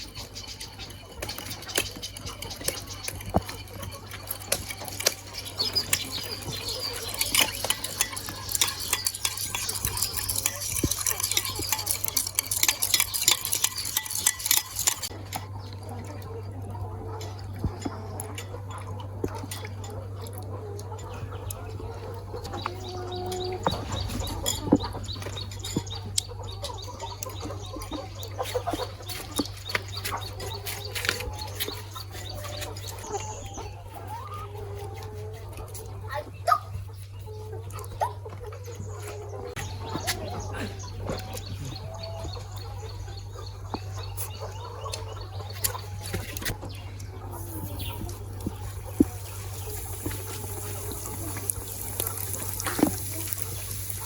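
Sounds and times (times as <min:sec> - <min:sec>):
utensils clinking on dishes: 0:00.0 - 0:16.2, 0:38.6 - 0:54.0
hens clucking: 0:00.0 - 0:54.0.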